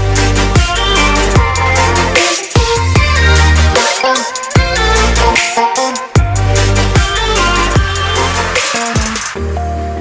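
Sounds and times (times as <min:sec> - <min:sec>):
electronic music with heavy bass: 0:00.0 - 0:10.0.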